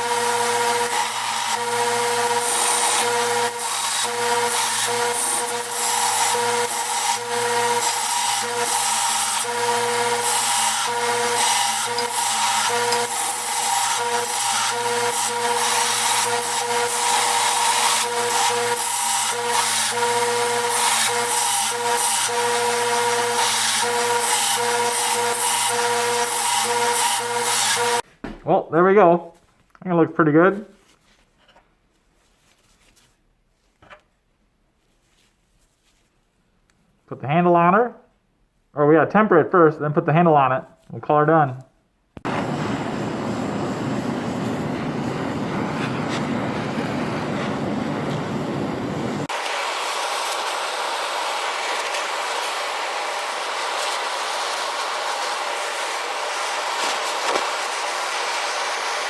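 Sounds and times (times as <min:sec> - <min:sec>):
electric grinder motor hum: 0:00.0 - 0:28.0, 0:48.8 - 0:59.0
grinding wheel rasping on steel: 0:00.0 - 0:28.0
flame roaring: 0:42.2 - 0:49.2.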